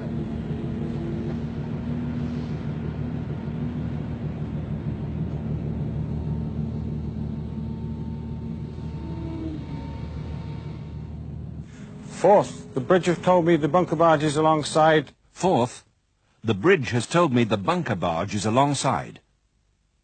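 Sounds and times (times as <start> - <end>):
ship machinery rumbling: 0.0 - 15.1.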